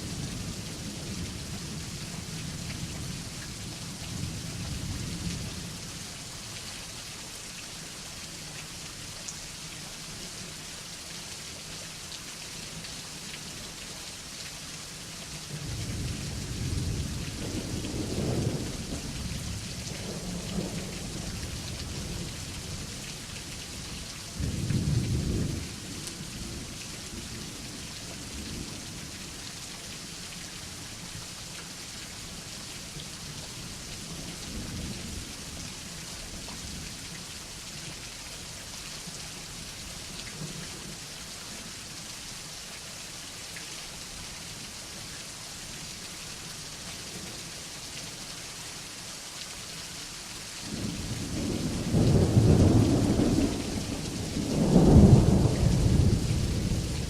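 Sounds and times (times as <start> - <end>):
heavy rain falling: 0.0 - 57.0
thunder rumbling: 50.7 - 57.0.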